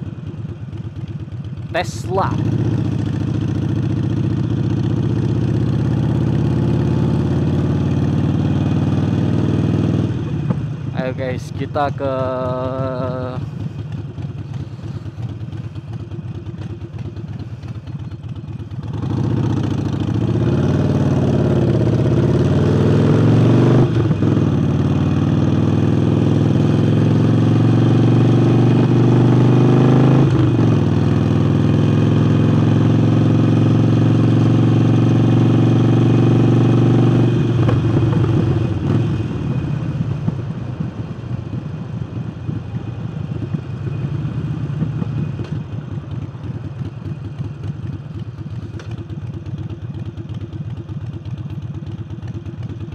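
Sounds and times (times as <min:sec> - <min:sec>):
motorcycle engine revving: 0:00.3 - 0:11.4, 0:12.2 - 0:40.9.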